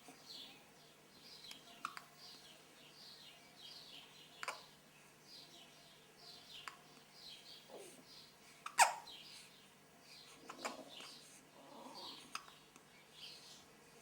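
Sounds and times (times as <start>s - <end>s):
baby hiccuping: 8.6s - 9.1s.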